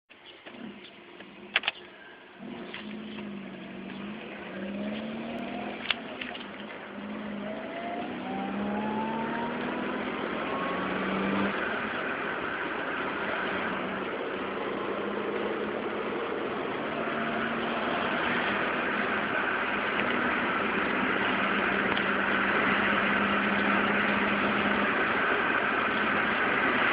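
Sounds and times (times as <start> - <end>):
motorcycle engine running: 0.4 - 26.9
sharp clicks: 1.5 - 1.9
rising whine: 2.4 - 26.9.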